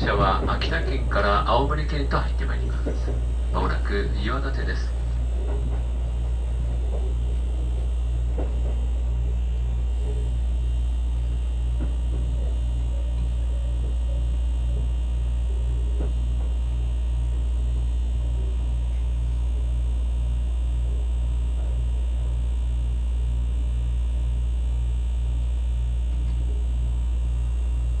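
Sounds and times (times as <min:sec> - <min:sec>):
engine pulsing throb: 0:00.0 - 0:16.6
train rumble inside carriage: 0:00.0 - 0:28.0.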